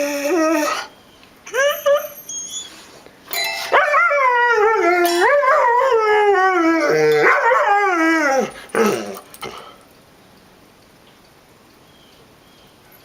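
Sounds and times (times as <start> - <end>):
dog howling: 3.7 - 9.3.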